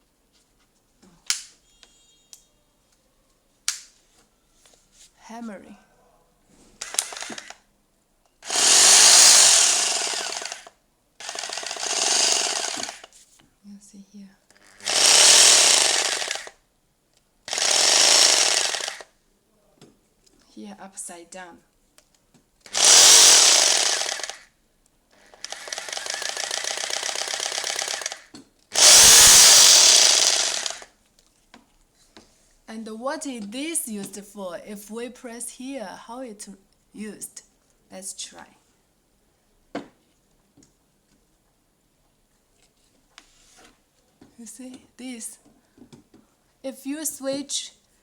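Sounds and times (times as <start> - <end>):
rotary hammer chiselling: 6.8 - 7.5, 8.4 - 13.1, 14.6 - 16.5, 17.5 - 19.0, 22.7 - 24.5, 25.2 - 30.9
fast even rattle: 8.5 - 13.1, 14.8 - 16.5, 17.5 - 19.0, 22.7 - 24.4, 25.4 - 30.9.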